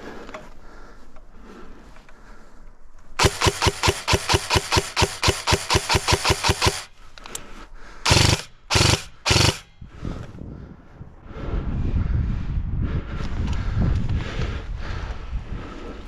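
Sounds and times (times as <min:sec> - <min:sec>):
airsoft gun firing: 0:03.2 - 0:07.0, 0:08.0 - 0:09.7.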